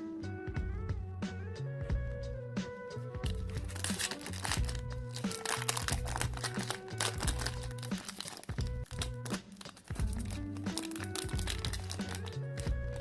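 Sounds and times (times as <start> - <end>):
background music with bass line: 0.0 - 13.0
foil pack crinkling and tearing: 3.3 - 13.0.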